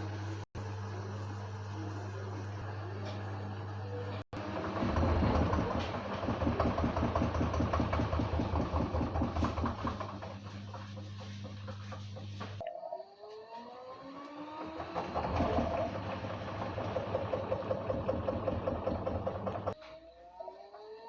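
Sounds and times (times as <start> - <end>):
washing machine drum pulsing: 4.4 - 12.6, 14.1 - 19.8
motor whine rising: 13.1 - 17.2.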